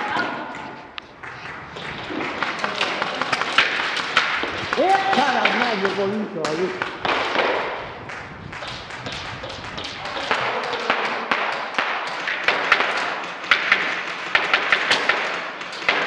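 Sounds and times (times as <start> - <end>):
airsoft guns firing: 1.8 - 16.0.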